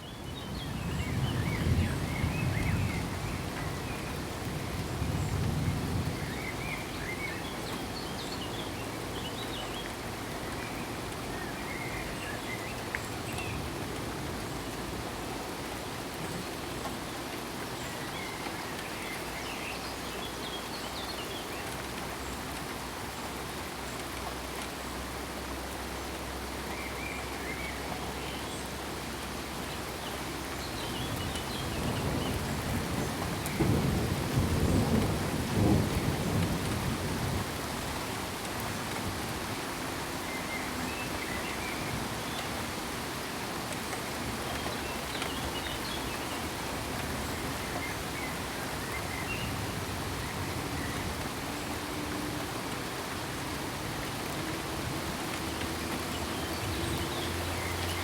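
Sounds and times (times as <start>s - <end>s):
steady rain falling: 0.0s - 58.0s
low thunder rumbling: 31.6s - 37.6s.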